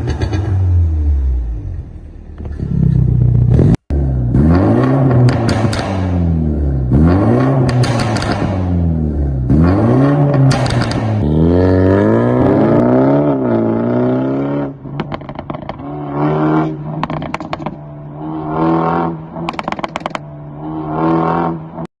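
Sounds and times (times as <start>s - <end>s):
car engine revving: 0.0s - 21.9s
exhaust crackling pops: 5.0s - 6.1s, 7.6s - 8.7s, 10.3s - 11.3s, 14.9s - 15.8s, 19.5s - 20.2s.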